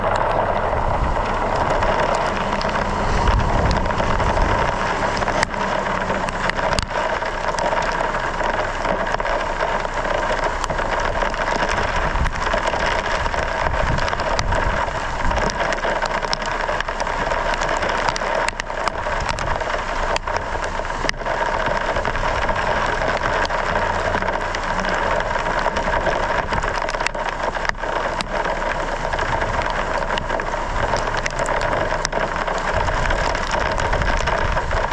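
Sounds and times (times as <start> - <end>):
engine and road rumble: 0.0 - 34.9
rain and hail striking a vehicle: 0.0 - 34.9.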